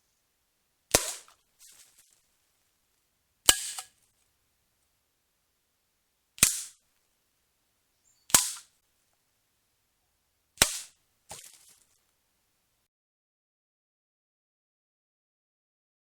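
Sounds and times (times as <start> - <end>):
air rifle shots: 0.9 - 1.3, 6.4 - 6.7, 8.3 - 8.7.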